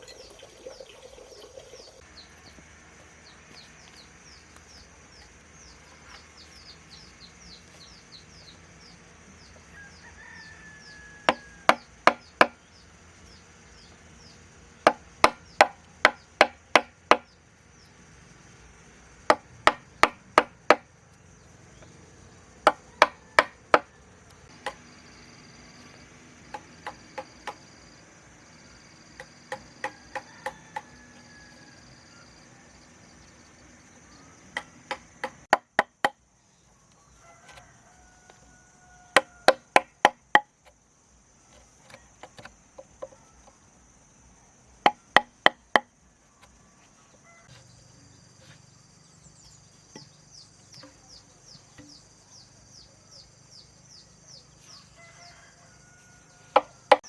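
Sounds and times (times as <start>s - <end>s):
chopping wood: 11.3s - 12.6s, 14.9s - 17.3s, 19.3s - 20.9s, 22.6s - 23.9s, 34.5s - 36.2s, 39.2s - 40.8s.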